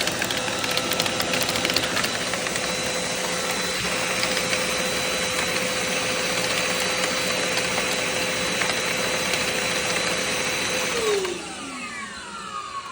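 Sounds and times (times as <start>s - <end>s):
plastic pistons clattering: 0.0s - 5.7s
vacuum cleaner rush and whine: 0.0s - 12.9s.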